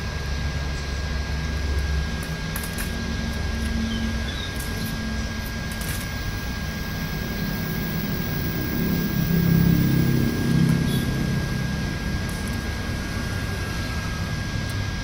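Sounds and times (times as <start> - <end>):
fan hum and hiss: 0.0 - 15.0
thin constant whine: 0.0 - 15.0
small parts clicking: 2.2 - 3.8.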